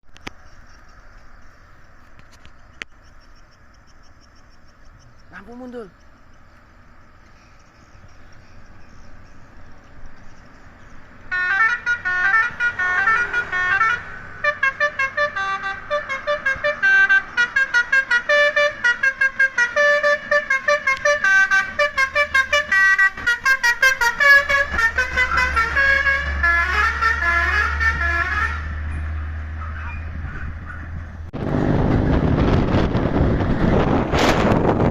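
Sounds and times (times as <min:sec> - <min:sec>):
low engine rumble: 0:00.0 - 0:34.9
truck multi-tone horn melody: 0:11.3 - 0:31.5.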